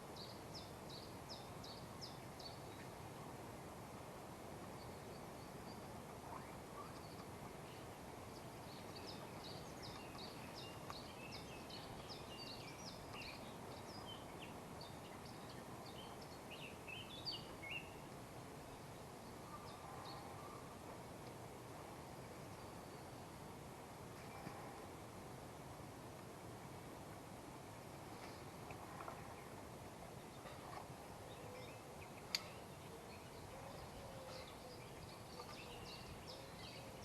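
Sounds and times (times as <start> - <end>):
outdoor background hiss: 0.0 - 37.0
songbird chirping: 4.6 - 23.6, 28.1 - 37.0.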